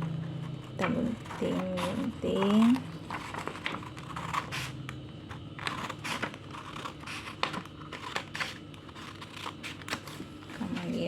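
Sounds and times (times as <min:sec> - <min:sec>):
scissors snipping paper: 0:00.5 - 0:11.0
paper rustling: 0:02.6 - 0:04.5, 0:05.6 - 0:11.0.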